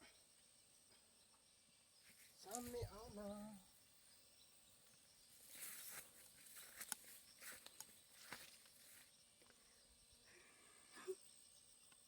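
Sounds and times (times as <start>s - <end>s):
plants rustling: 5.4s - 9.1s.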